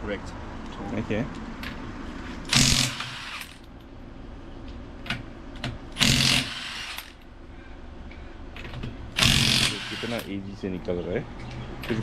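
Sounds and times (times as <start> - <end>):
impact wrench bursts: 2.5 - 3.7, 6.0 - 7.2, 9.1 - 10.4.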